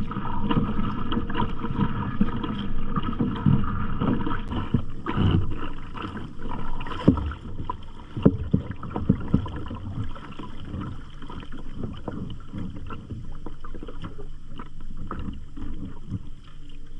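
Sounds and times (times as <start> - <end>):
water lapping: 0.0 - 16.9
water splashing around kayak: 0.0 - 16.9
paddle knocks: 6.9 - 12.9.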